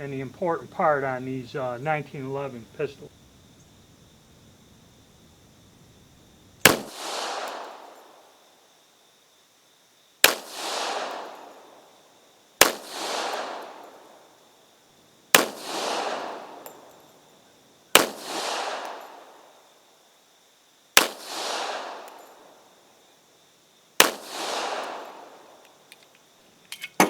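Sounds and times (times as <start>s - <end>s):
gunshot echo: 6.6s - 8.3s, 10.2s - 11.8s, 12.6s - 14.2s, 15.3s - 16.9s, 18.0s - 19.4s, 21.0s - 22.6s, 24.0s - 25.6s
pistol shots: 6.6s - 8.3s, 10.2s - 11.9s, 12.6s - 14.3s, 15.3s - 17.0s, 17.9s - 19.6s, 21.0s - 22.6s, 24.0s - 25.8s.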